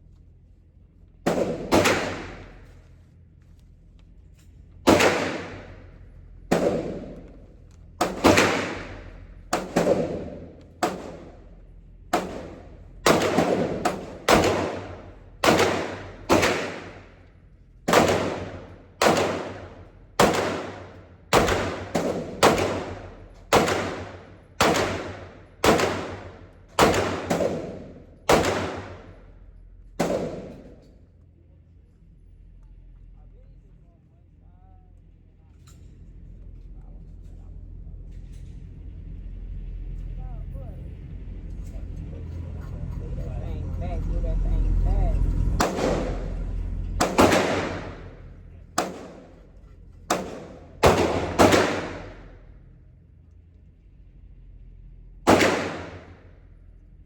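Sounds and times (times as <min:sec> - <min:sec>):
pistol shots echoing: 0:01.3 - 0:02.8, 0:04.9 - 0:11.5, 0:12.1 - 0:17.2, 0:17.9 - 0:29.2, 0:30.0 - 0:30.9, 0:45.6 - 0:46.4, 0:47.0 - 0:49.4, 0:50.1 - 0:52.5, 0:55.3 - 0:56.3.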